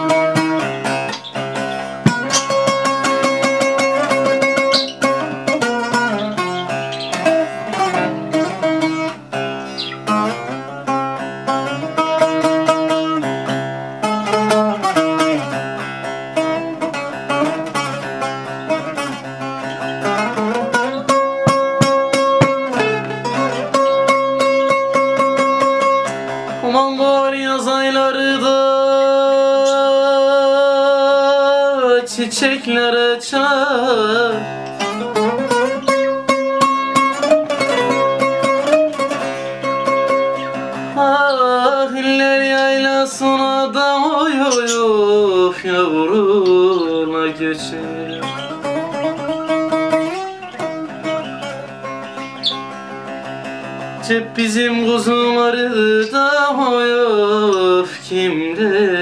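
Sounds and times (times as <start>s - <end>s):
plucked string instrument melody: 0.0s - 59.0s.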